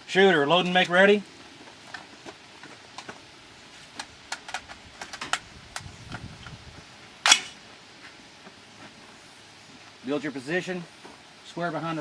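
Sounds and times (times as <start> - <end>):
rifle metallic clicks and rattles: 4.0 - 5.9, 7.3 - 7.6
rifle clack: 7.3 - 7.6.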